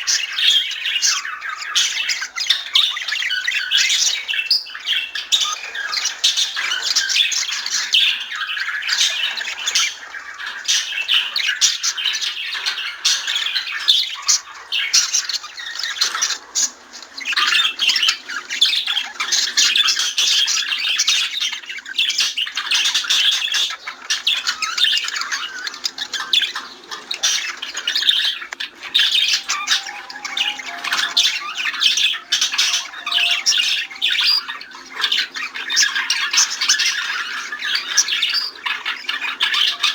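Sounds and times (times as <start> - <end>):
budgerigars chirping and squawking: 0.0 - 39.9.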